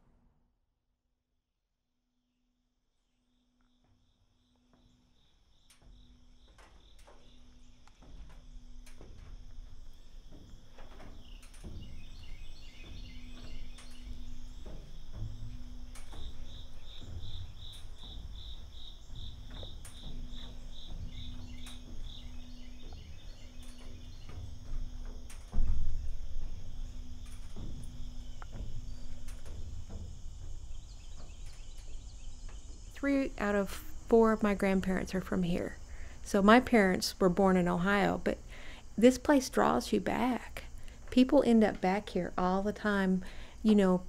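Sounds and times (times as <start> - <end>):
crickets and katydids chirping: 3.3 - 44.0
footsteps and knocks: 3.7 - 38.5.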